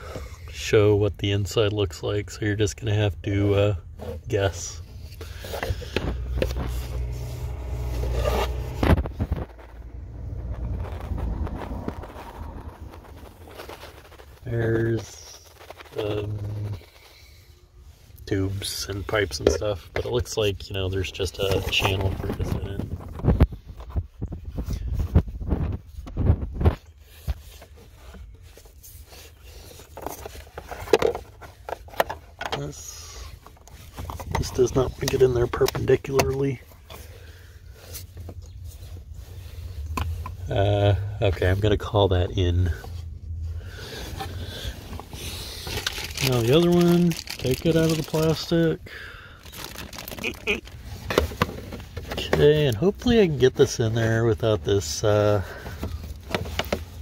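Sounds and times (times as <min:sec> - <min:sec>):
filter scraping against plastic: 0:02.8 - 0:57.0
hands rubbing plastic parts: 0:03.2 - 0:57.0
microphone handling rumble: 0:04.3 - 0:17.0, 0:21.6 - 0:27.0.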